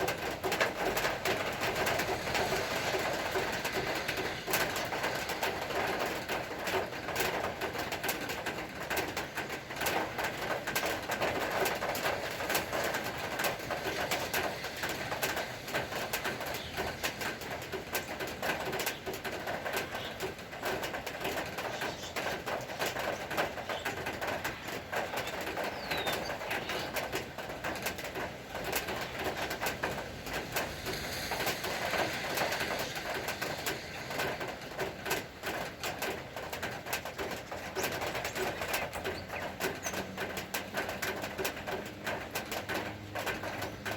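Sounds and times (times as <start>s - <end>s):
rain falling steadily: 0.0s - 43.9s
birds calling: 10.7s - 35.7s, 37.1s - 41.3s.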